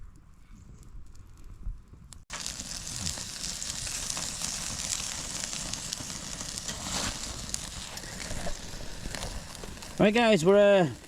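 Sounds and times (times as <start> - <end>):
burning wood crackling: 0.0 - 11.0
meat sizzling: 2.3 - 11.0.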